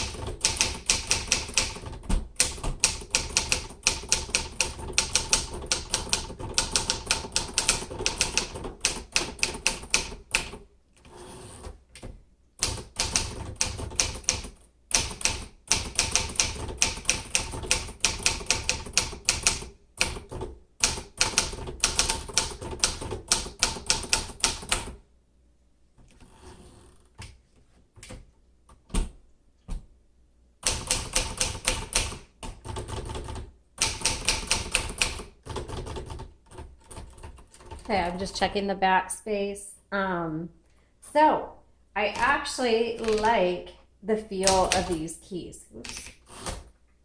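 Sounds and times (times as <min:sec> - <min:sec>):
manual typewriter keystrokes: 0:00.0 - 0:25.0, 0:30.6 - 0:37.9, 0:42.2 - 0:43.4, 0:44.4 - 0:45.0.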